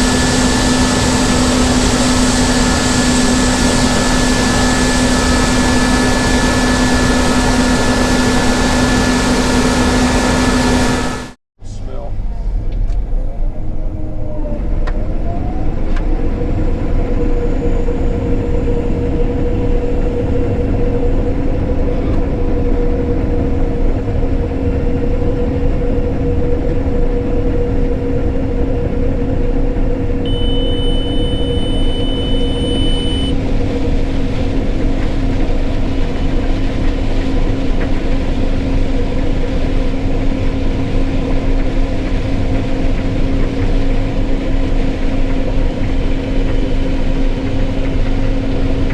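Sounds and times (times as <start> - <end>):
combine harvester running: 0.0 - 12.6, 16.2 - 48.9
high beep: 30.3 - 33.4.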